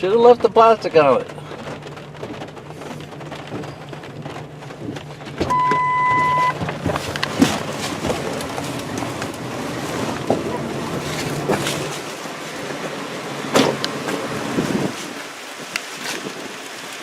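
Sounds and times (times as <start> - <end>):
low vehicle hum: 0.0 - 15.8
rain pattering on truck: 0.0 - 17.0
electronic beep: 5.5 - 6.6.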